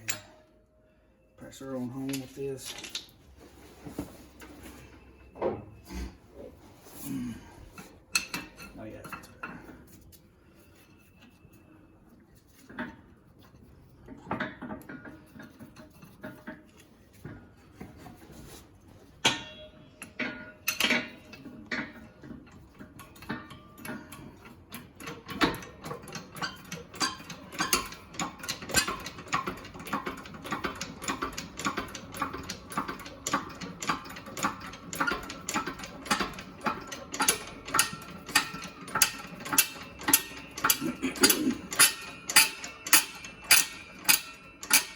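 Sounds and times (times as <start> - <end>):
ratchet wrench clicking: 37.2 - 44.9.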